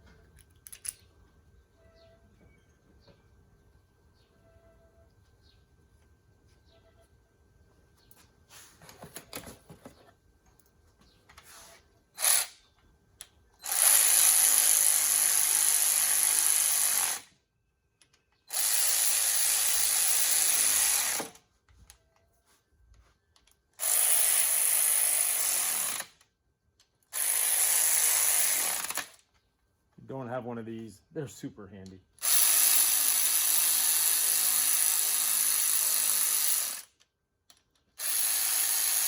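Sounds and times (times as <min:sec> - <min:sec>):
cordless power tool running: 0:18.5 - 0:21.3, 0:32.2 - 0:36.9, 0:38.0 - 0:39.0.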